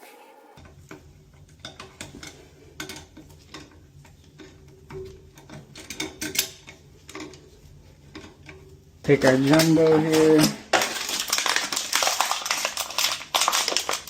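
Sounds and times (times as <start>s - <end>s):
hard objects clicking and knocking: 8.1s - 14.0s.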